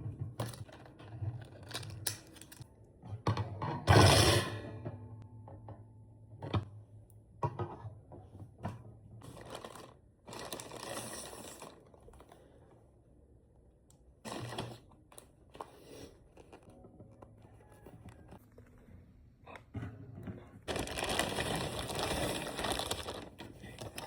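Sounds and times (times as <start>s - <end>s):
small items clattering: 0.2s - 2.6s, 9.2s - 12.6s, 14.3s - 18.4s, 20.2s - 24.0s
packaging rustling: 9.2s - 12.6s, 15.5s - 18.2s, 20.6s - 24.0s.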